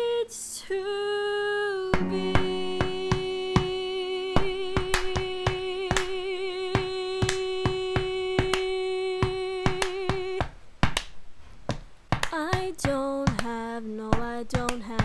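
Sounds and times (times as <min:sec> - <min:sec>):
person singing long note: 0:00.0 - 0:09.2
hand claps: 0:05.9 - 0:06.2, 0:06.8 - 0:13.6, 0:14.2 - 0:15.0.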